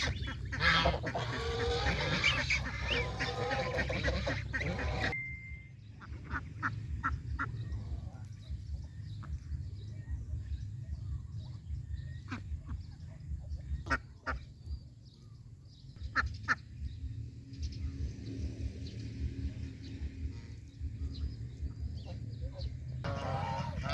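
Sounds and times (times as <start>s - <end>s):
geese honking: 0.0s - 5.2s, 20.3s - 23.9s
low rumble: 0.0s - 13.9s.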